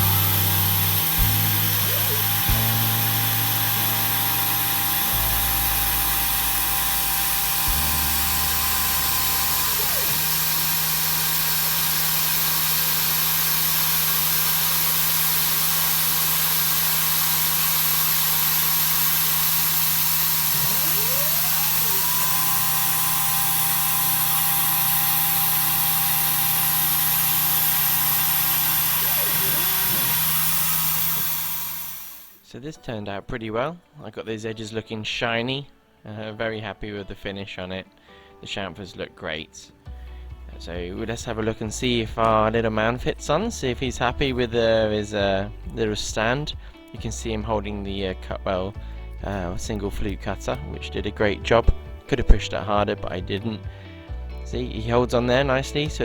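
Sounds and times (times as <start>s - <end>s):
machine spindle whine: 0.0s - 32.4s.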